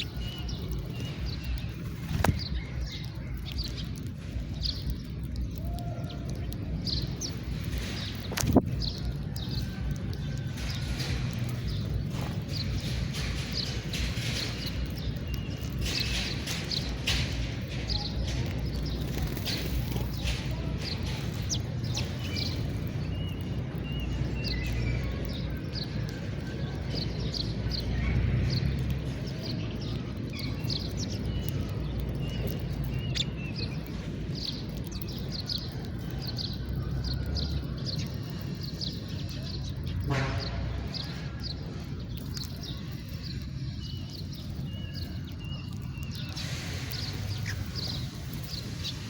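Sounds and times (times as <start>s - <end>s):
sparrows chirping: 0.0s - 49.0s
steady low rumble: 0.0s - 49.0s.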